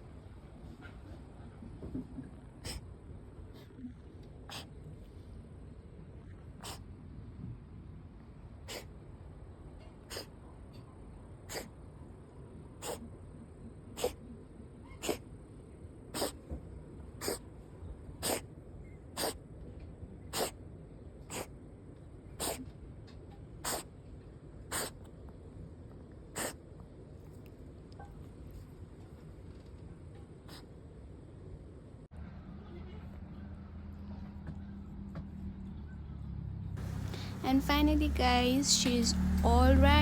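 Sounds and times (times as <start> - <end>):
cat sneezing: 2.6 - 2.9, 4.4 - 4.8, 6.6 - 6.9, 8.6 - 9.0, 10.0 - 10.4, 11.4 - 11.8, 12.8 - 13.1, 14.0 - 14.3, 14.9 - 15.3, 16.1 - 16.6, 17.2 - 17.5, 18.2 - 18.5, 19.1 - 19.4, 20.3 - 20.6, 21.2 - 21.6, 22.3 - 22.7, 23.6 - 23.9, 24.7 - 25.1, 26.3 - 26.6, 30.4 - 30.7.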